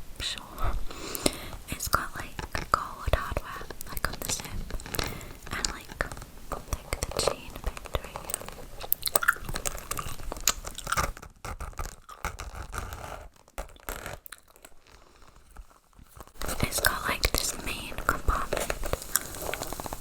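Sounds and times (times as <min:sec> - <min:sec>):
gum chewing mouth smacks: 0:08.8 - 0:11.1.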